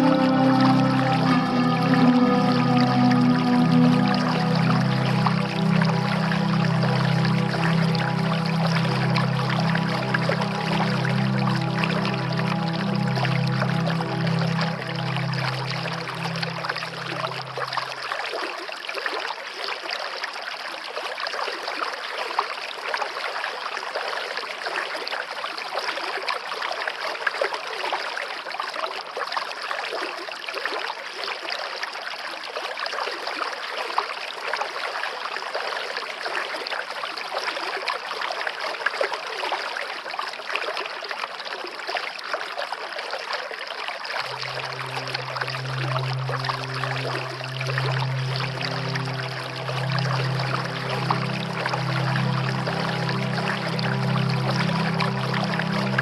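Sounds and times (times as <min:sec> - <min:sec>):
low held music tones: 0:00.0 - 0:18.2, 0:44.2 - 0:56.0
stream water flowing and splashing: 0:00.0 - 0:56.0.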